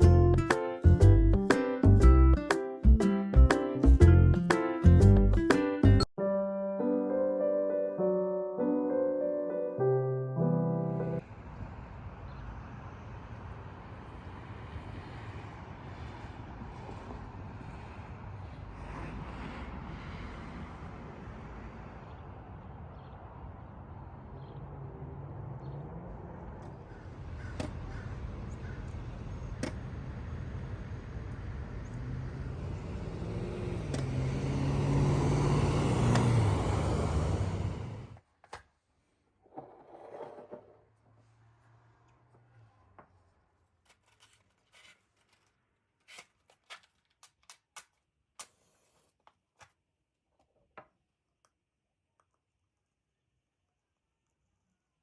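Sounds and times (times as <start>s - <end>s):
car engine and road noise: 11.0s - 38.2s, 40.4s - 45.8s.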